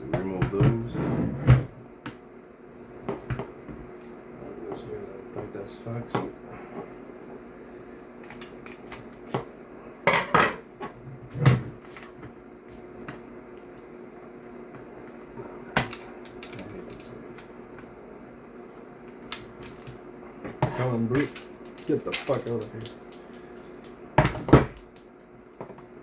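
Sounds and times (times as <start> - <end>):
screwdriver and metal parts clinking: 21.1 - 23.9.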